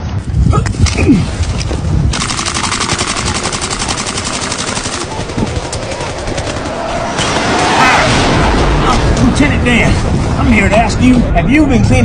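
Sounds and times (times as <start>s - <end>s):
rapid automatic gunfire: 2.1s - 7.2s.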